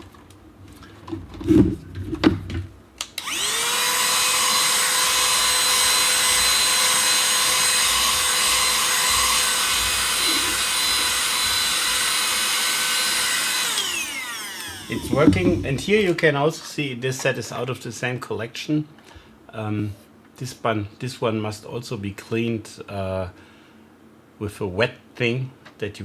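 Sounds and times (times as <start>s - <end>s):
small vacuum cleaner motor whine: 3.0s - 16.1s
handling knocks: 14.8s - 16.2s.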